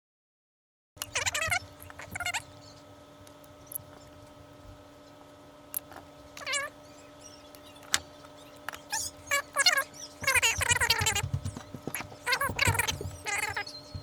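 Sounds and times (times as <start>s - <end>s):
faint steady hum: 1.0s - 14.0s
cat meowing: 6.4s - 6.7s.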